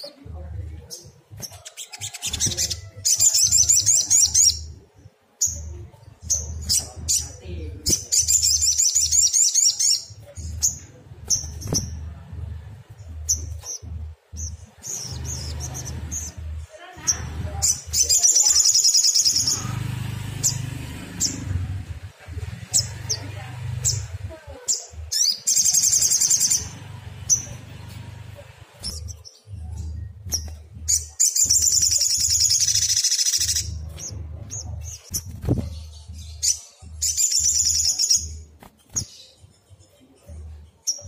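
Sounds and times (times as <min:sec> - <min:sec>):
bird trills and chirps: 0:00.0 - 0:41.0
steady low hum: 0:10.1 - 0:18.1, 0:32.7 - 0:37.1.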